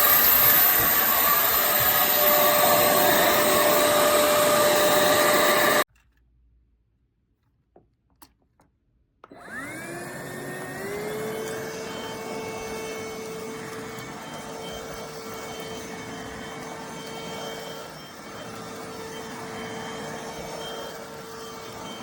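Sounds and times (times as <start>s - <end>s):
vacuum cleaner whining: 0.0s - 5.9s, 9.2s - 22.0s.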